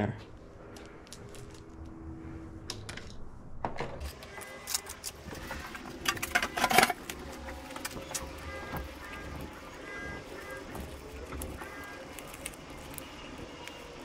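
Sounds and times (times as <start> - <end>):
small metal parts clinking: 4.1 - 7.2.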